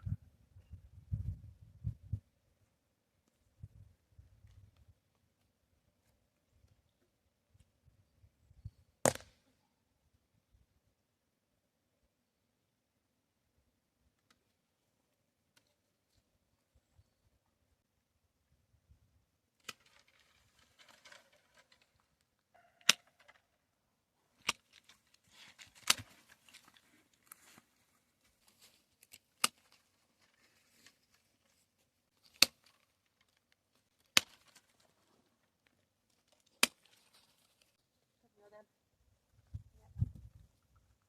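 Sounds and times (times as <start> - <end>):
soft rustling: 24.8 - 29.0, 29.6 - 32.1.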